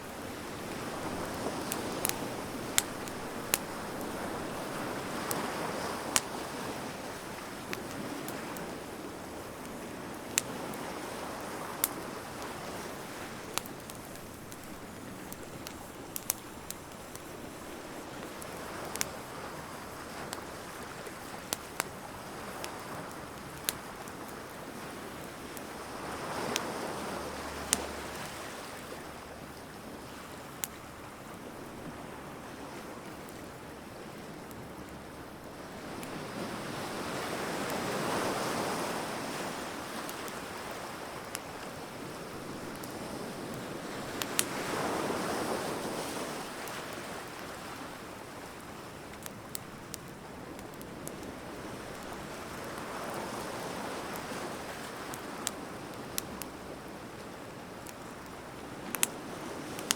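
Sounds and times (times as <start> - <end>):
waves breaking on shore: 0.0 - 16.0, 35.7 - 48.8
wood fire crackling and popping: 0.0 - 28.6, 33.1 - 59.9.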